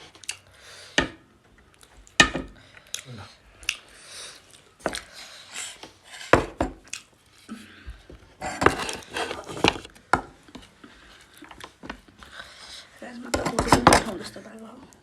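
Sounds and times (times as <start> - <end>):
chewing and mouth noises: 0.1 - 0.5, 2.8 - 5.8, 6.8 - 7.4.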